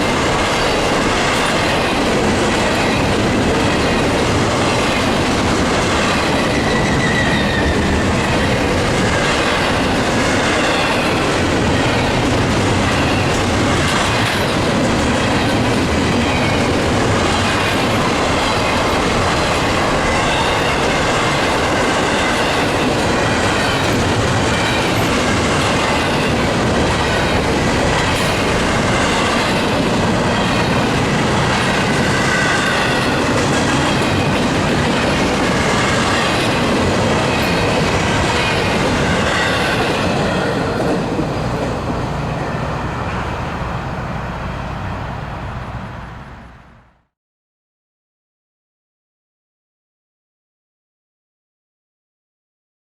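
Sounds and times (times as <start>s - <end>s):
steel wheels rumbling on rails: 0.0s - 47.0s
high wheel squeals: 6.1s - 8.6s, 39.2s - 46.6s.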